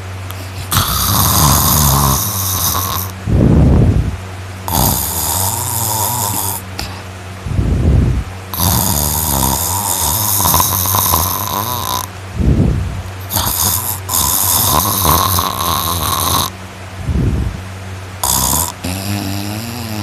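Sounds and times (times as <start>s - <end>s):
person snoring loudly: 0.3s - 4.0s, 4.6s - 7.0s, 8.5s - 12.1s, 13.2s - 16.5s, 18.2s - 20.0s
breath hiss: 0.3s - 4.1s, 4.7s - 17.6s.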